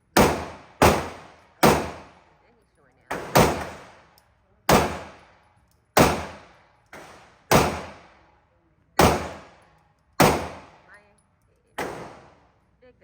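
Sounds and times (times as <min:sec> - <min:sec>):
pistol shots with echo: 0:00.1 - 0:02.4, 0:03.1 - 0:05.4, 0:06.0 - 0:08.4, 0:09.0 - 0:10.9, 0:11.8 - 0:12.5.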